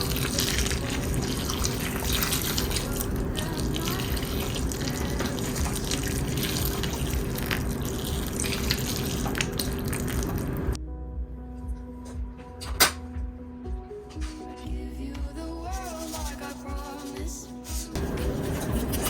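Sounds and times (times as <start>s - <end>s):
running water: 0.0s - 10.8s.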